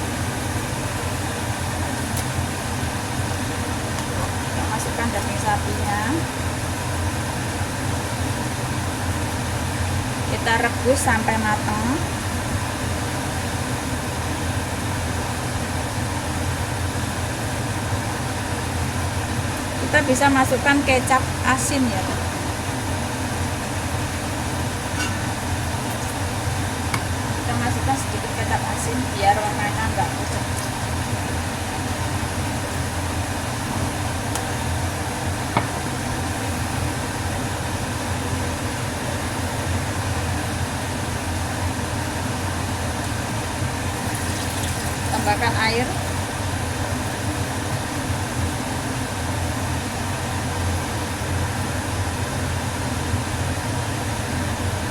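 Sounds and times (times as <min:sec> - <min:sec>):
gas stove burning: 0:00.0 - 0:54.9
pot boiling: 0:00.0 - 0:54.9
range hood fan drone: 0:00.0 - 0:54.9
utensil clink: 0:25.0 - 0:25.4.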